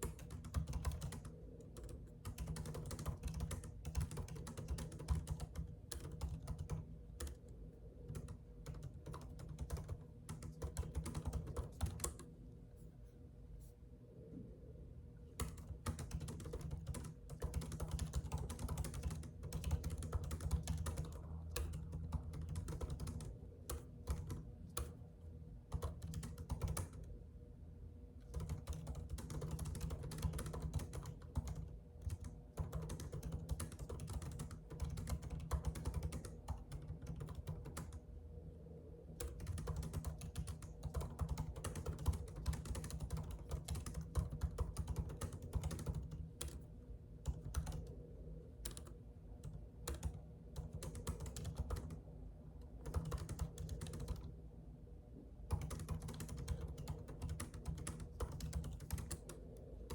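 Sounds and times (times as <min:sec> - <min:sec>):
computer keyboard typing: 0:00.0 - 0:07.5, 0:08.1 - 0:12.3, 0:15.4 - 0:25.0, 0:25.7 - 0:27.1, 0:28.2 - 0:38.0, 0:39.2 - 0:48.0, 0:48.6 - 0:52.0, 0:52.7 - 0:54.4, 0:55.5 - 0:59.9.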